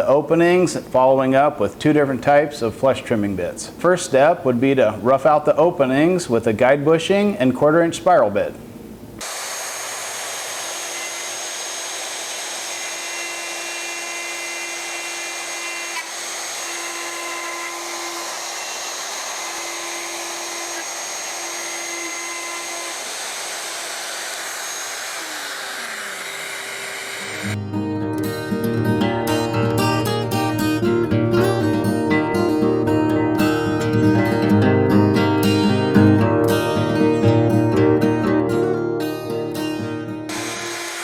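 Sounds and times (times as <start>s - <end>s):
handheld router cutting wood: 9.2s - 27.6s, 40.3s - 41.0s.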